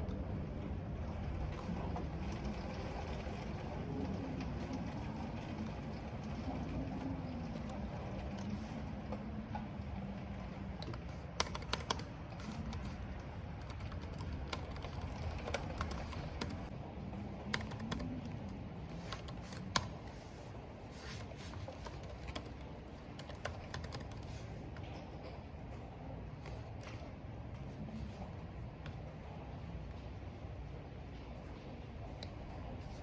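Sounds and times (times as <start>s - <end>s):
computer keyboard typing: 10.4s - 16.7s, 17.5s - 20.1s, 21.1s - 24.9s.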